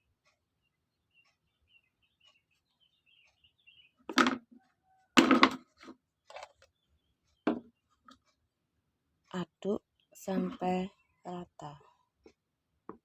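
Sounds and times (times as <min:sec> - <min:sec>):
faint bird chirps: 0:00.0 - 0:05.1.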